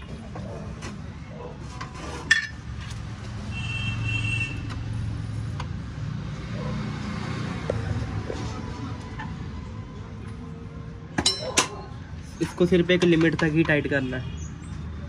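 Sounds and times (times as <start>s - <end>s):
metal clinks of hand tools: 11.2s - 11.8s
sharp metal clank: 11.2s - 11.8s.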